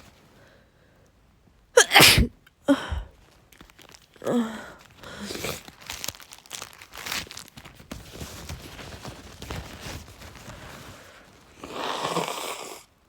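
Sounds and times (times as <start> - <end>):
woman sneezing: 1.8 - 3.0
soft breathy noises: 2.7 - 3.3.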